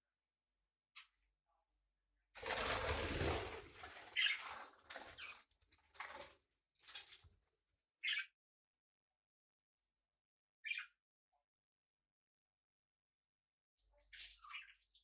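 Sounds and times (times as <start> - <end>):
parrot flapping wings: 2.4 - 7.2.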